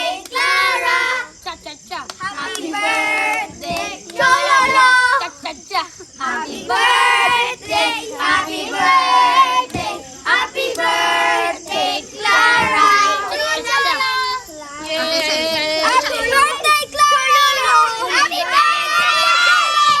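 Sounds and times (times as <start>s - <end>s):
child singing: 0.0s - 20.0s.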